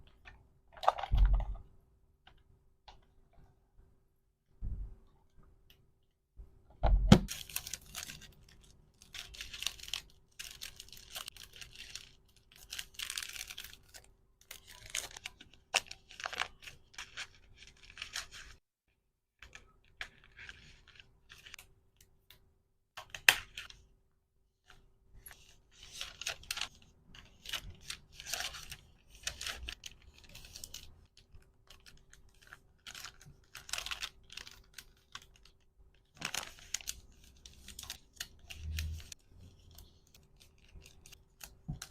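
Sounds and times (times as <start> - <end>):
packaging rustling and tearing: 7.3 - 18.6, 25.3 - 41.9.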